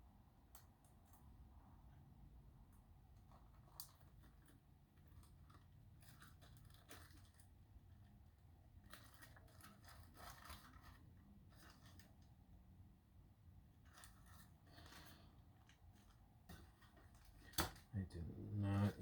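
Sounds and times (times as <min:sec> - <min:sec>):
plastic bags rustling: 0:03.3 - 0:08.0, 0:08.7 - 0:12.3, 0:13.7 - 0:17.9.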